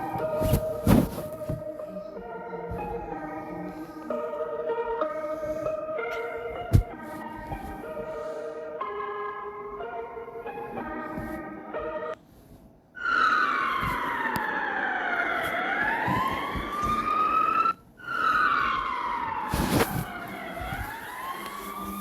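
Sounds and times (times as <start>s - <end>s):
siren wailing in slow sweeps: 13.0s - 22.0s.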